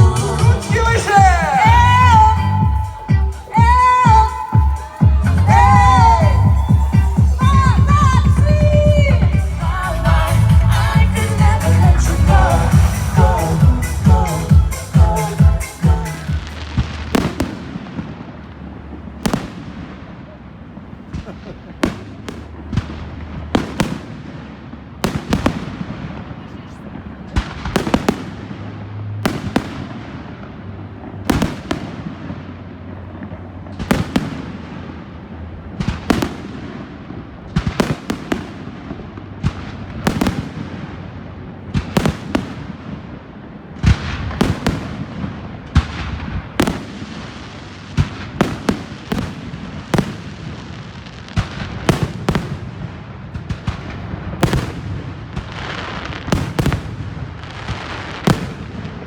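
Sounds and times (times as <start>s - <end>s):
firework crackle: 0.0s - 59.0s.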